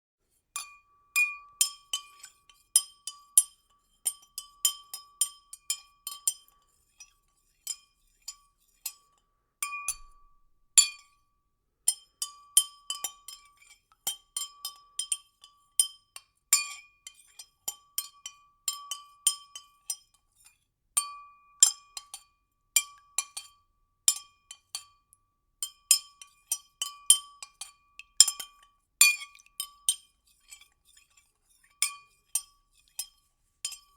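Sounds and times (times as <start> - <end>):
spoon clinking against glass: 31.8 - 33.9.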